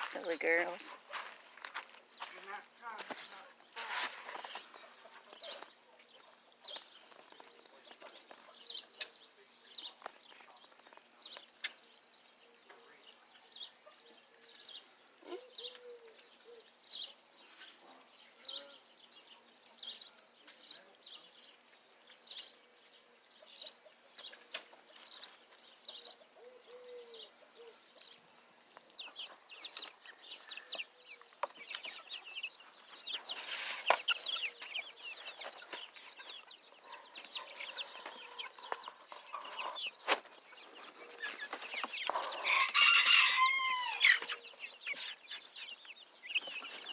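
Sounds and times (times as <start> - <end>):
chickens clucking and calling: 23.0 - 46.9.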